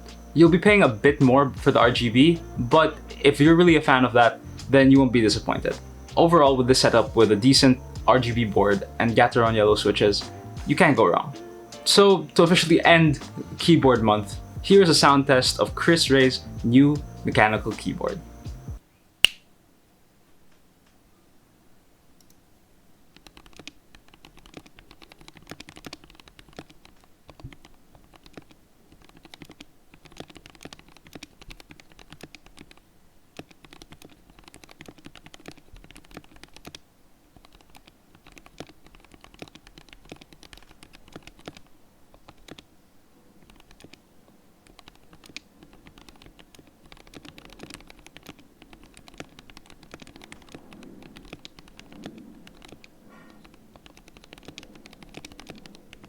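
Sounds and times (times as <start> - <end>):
mechanical keyboard key clacks: 44.7 - 56.0.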